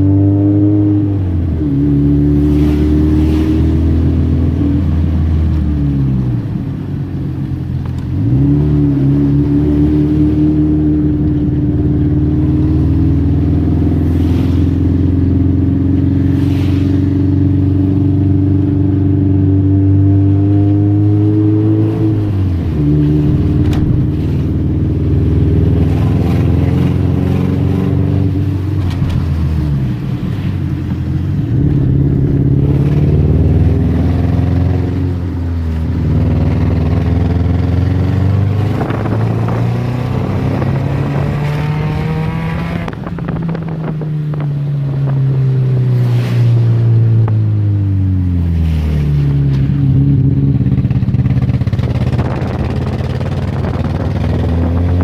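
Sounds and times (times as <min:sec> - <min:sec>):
vehicle engine running: 0:21.8 - 0:55.0.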